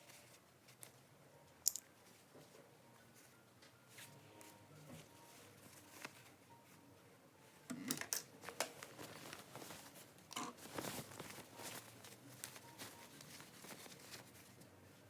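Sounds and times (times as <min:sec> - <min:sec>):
cloth rustling: 0:02.0 - 0:06.8, 0:08.4 - 0:14.7.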